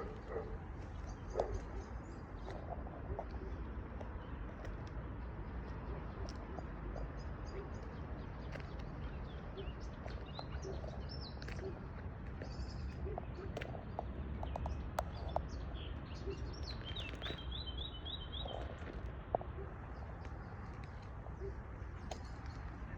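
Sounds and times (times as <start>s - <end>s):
small birds chirping: 0.0s - 22.9s.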